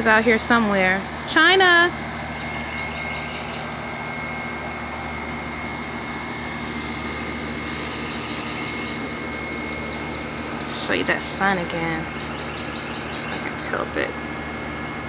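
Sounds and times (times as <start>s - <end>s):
machine hum and hiss: 0.0s - 15.0s
thin high whine: 0.0s - 15.0s.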